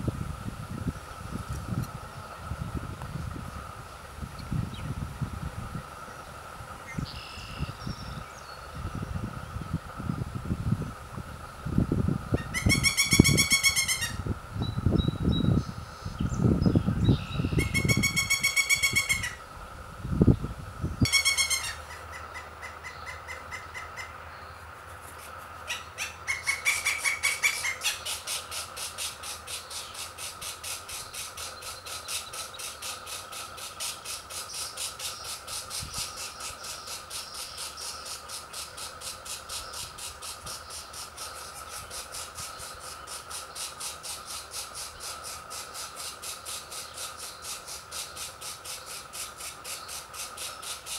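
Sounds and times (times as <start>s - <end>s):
woodpecker nestlings calling: 12.3s - 14.2s, 16.2s - 19.4s, 21.0s - 24.2s, 25.6s - 50.9s.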